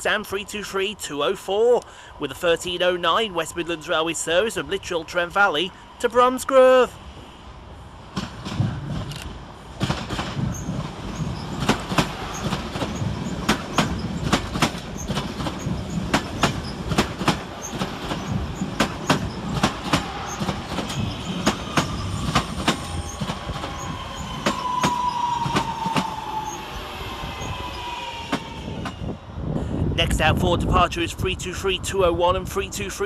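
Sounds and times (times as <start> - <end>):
train wheels clicking over rail joints: 8.1 - 26.6
train whine falling in pitch: 17.4 - 29.4.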